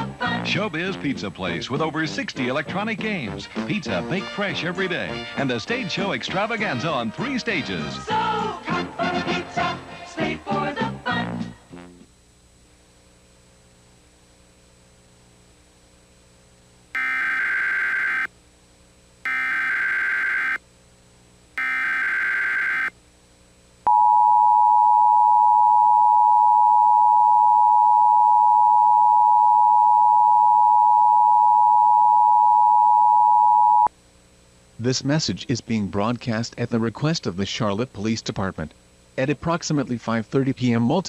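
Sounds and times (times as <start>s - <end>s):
electronic data bursts: 17.0s - 18.3s, 19.3s - 20.6s, 21.6s - 22.9s
two-tone attention signal: 17.0s - 18.3s, 19.3s - 20.6s, 21.6s - 22.9s.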